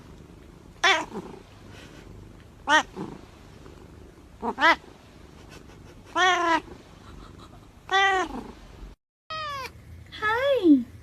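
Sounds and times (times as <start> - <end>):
cat meowing: 0.8 - 1.3, 2.6 - 3.1, 4.4 - 4.9, 6.1 - 6.8, 7.9 - 8.6, 9.3 - 9.7.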